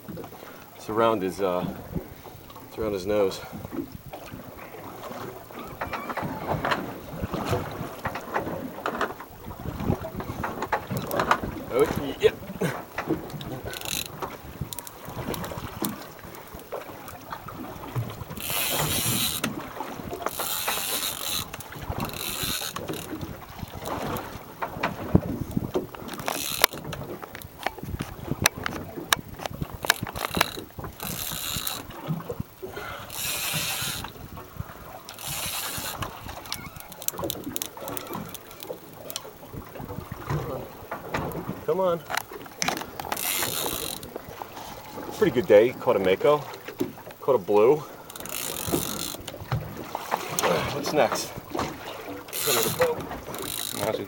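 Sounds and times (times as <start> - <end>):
fishing reel drag ratcheting: 10.1 - 11.5, 13.0 - 16.6, 18.2 - 24.4, 25.9 - 28.8, 29.4 - 32.0, 32.7 - 34.2, 35.1 - 39.3, 42.1 - 44.8, 48.0 - 51.7, 52.3 - 54.0
scattered clicks and knocks: 25.8 - 31.9.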